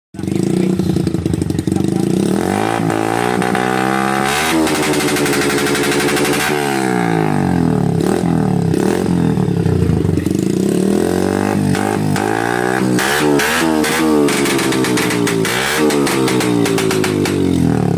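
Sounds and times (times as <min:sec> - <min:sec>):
motorcycle engine revving: 0:00.2 - 0:17.9.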